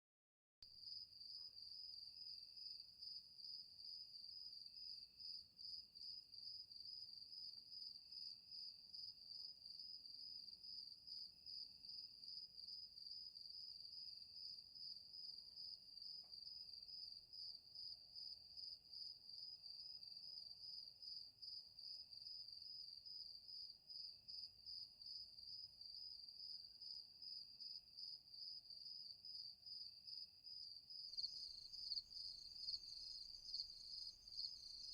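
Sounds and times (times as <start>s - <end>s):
lower insect chirp: 15.6s - 34.9s
crickets chirping: 20.0s - 34.9s.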